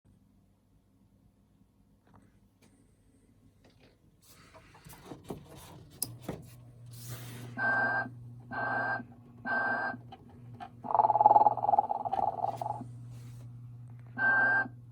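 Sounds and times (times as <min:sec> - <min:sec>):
low steady hum: 0:00.2 - 0:14.9
short electronic tones: 0:10.8 - 0:12.8.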